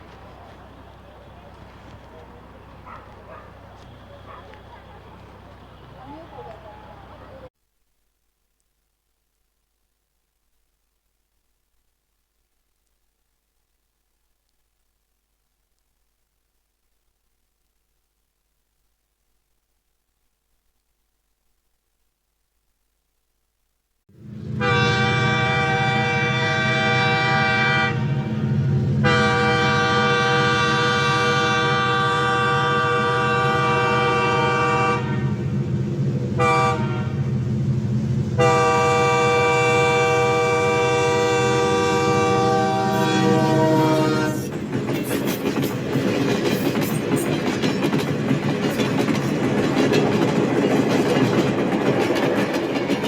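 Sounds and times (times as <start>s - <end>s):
coaches clattering on track: 0.0s - 7.5s, 44.5s - 53.0s
running train rumble: 0.0s - 7.5s, 24.1s - 53.0s
train horn blasts: 24.1s - 35.6s, 36.3s - 37.4s, 38.4s - 44.5s.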